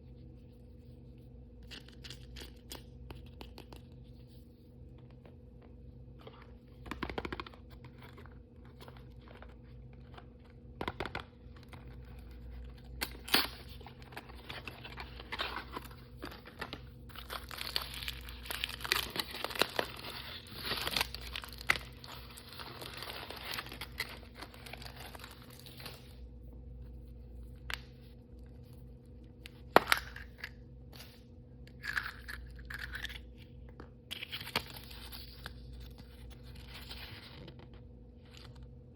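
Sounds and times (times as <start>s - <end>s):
wrappers tearing and crinkling: 12.9s - 26.2s.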